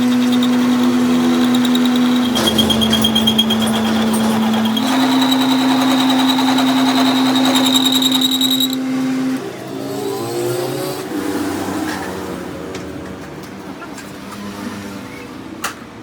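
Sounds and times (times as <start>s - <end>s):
lathe motor humming and whining: 0.0s - 9.4s.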